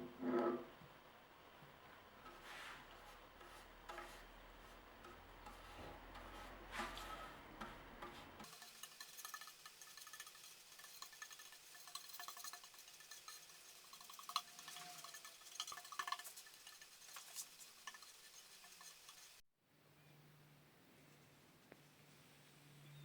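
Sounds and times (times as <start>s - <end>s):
faint scraping and scratching: 0.0s - 0.8s, 2.2s - 19.4s.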